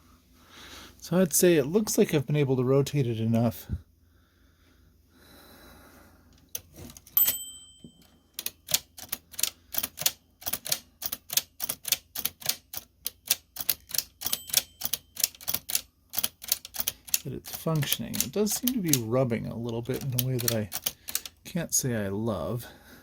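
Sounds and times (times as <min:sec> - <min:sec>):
typewriter strike with metallic ring: 0:07.1 - 0:08.5, 0:14.0 - 0:15.6
typewriter keystrokes: 0:08.4 - 0:19.1, 0:19.7 - 0:21.4.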